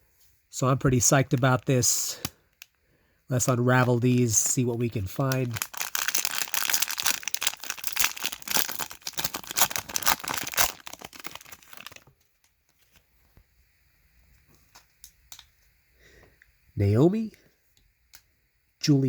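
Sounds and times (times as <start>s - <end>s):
wrapper tearing and crinkling: 3.5s - 13.0s.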